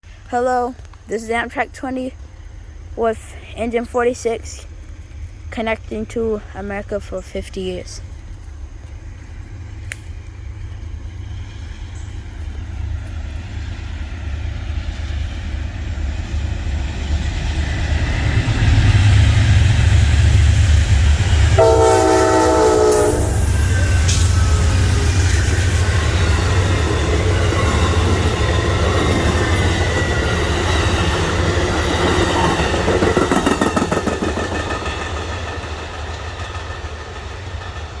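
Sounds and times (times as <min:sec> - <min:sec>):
diesel locomotive engine rumble: 0:00.0 - 0:38.0
wheels clattering on rails: 0:03.0 - 0:38.0
train horn chord: 0:21.6 - 0:24.9.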